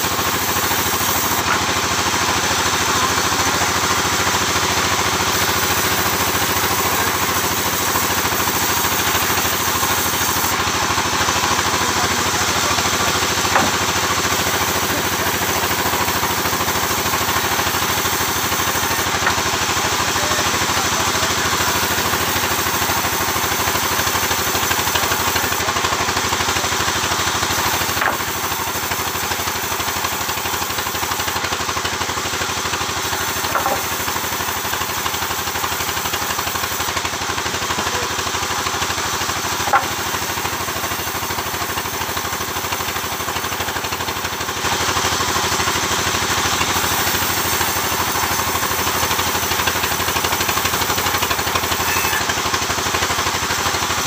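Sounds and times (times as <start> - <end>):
sawmill engine running: 0.0 - 54.0.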